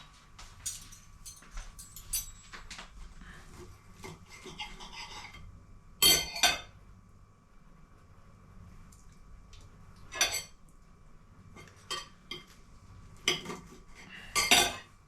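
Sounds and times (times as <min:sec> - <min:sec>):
cutlery clinking on a plate: 0:00.6 - 0:02.8, 0:06.0 - 0:06.7, 0:10.2 - 0:10.6, 0:14.4 - 0:14.9.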